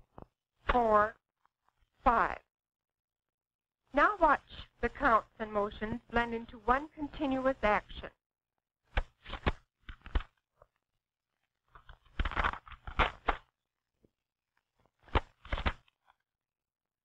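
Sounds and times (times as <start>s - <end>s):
paper rustling: 9.0s - 10.4s, 11.7s - 13.5s, 14.7s - 16.2s.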